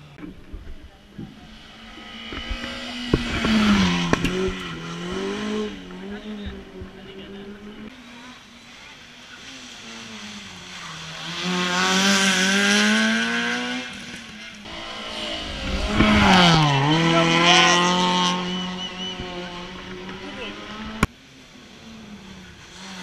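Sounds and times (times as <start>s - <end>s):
race car engine at high revs: 0.0s - 23.0s.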